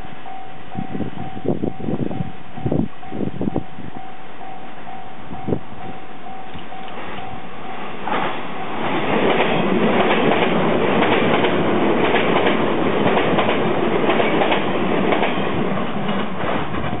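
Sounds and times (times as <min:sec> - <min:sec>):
level crossing warning bell: 0:00.0 - 0:09.2, 0:12.0 - 0:17.0
train wheels clattering: 0:06.5 - 0:17.0.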